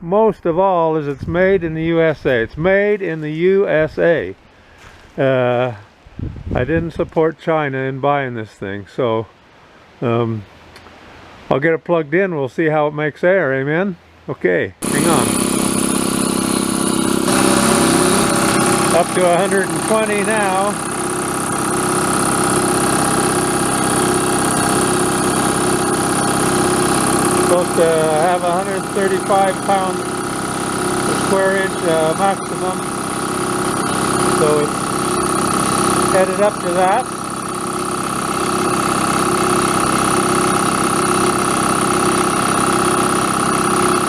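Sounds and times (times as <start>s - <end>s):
electric air compressor running: 14.8s - 44.0s.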